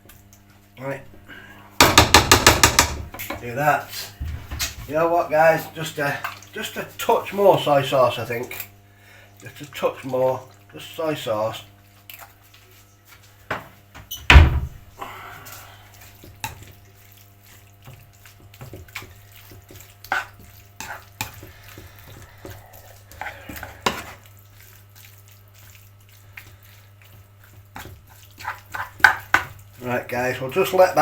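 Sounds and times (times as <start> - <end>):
loud knock: 1.8 - 3.0
pans and utensils clicking: 1.8 - 3.4.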